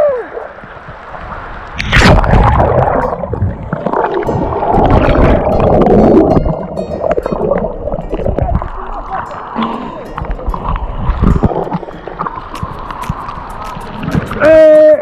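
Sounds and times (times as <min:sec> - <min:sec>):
water splashing and gurgling: 0:00.0 - 0:15.0
small knocks and clicks: 0:10.2 - 0:14.4.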